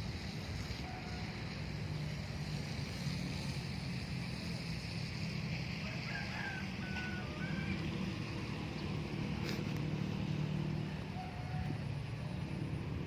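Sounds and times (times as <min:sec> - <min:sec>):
low motor hum: 0:06.6 - 0:13.0.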